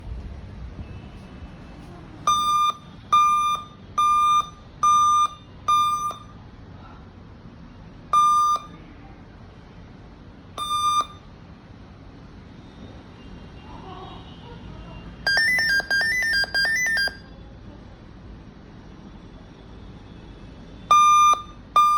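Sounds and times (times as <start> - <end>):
laptop beeping: 2.2 - 6.4, 8.1 - 8.9, 10.5 - 11.3, 15.3 - 17.4, 20.9 - 21.9.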